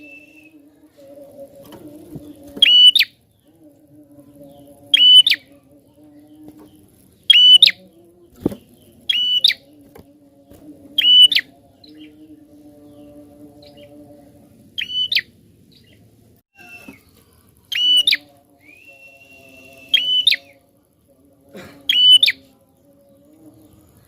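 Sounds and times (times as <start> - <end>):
faint low hum: 0.0 - 24.0.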